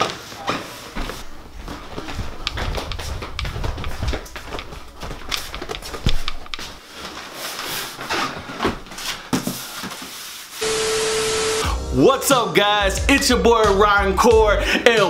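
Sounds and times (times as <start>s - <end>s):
light handling clicks and knocks: 2.2s - 6.8s.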